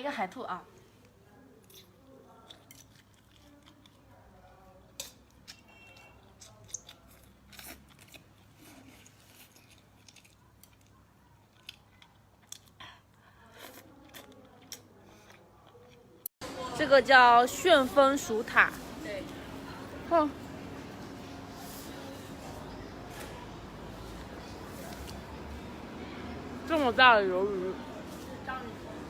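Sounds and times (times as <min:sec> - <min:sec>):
distant murmuring voices: 0:14.0 - 0:29.0.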